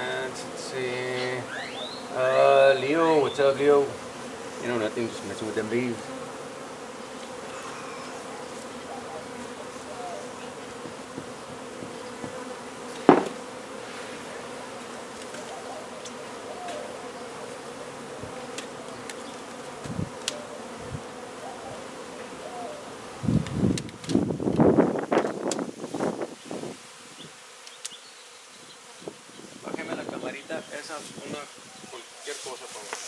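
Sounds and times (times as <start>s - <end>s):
bees buzzing: 0.0s - 33.0s
sharp knock: 13.0s - 13.4s
faint ticks: 18.5s - 20.4s, 27.6s - 28.0s.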